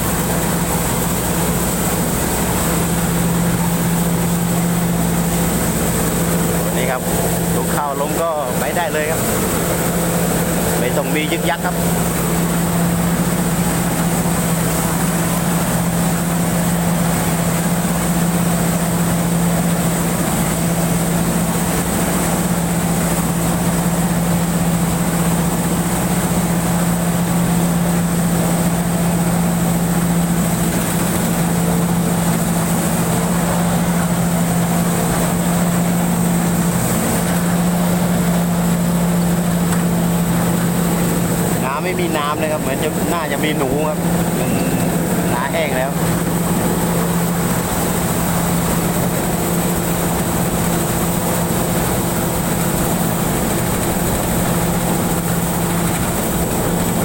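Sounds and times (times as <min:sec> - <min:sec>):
combine harvester engine humming: 0:00.0 - 0:57.0.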